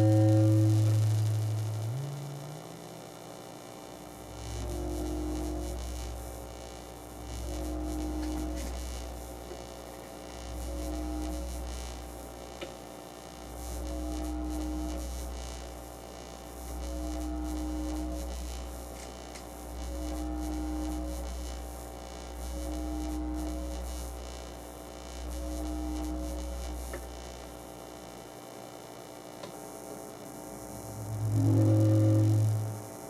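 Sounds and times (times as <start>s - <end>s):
mid-pitched tone: 0.0s - 3.0s, 4.2s - 9.4s, 30.4s - 32.9s
electrical hum from mixer: 0.0s - 33.0s.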